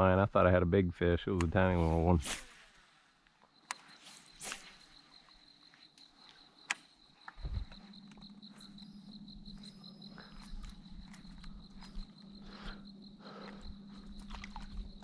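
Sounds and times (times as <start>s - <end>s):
faint pulsing high tone: 7.4s - 12.8s.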